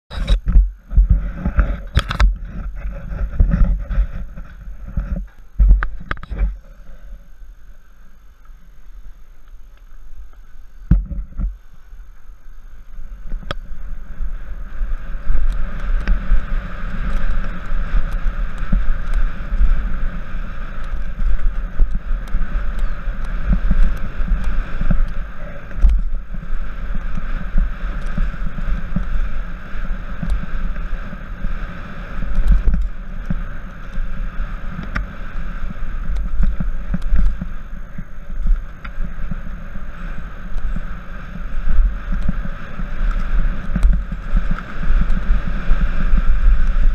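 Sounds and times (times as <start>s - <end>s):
bike knocking and rattling: 0.1s - 7.2s, 9.4s - 46.9s
tyres rumbling over dirt: 0.1s - 7.4s
wind buffeting microphone: 0.1s - 7.6s, 9.6s - 46.9s.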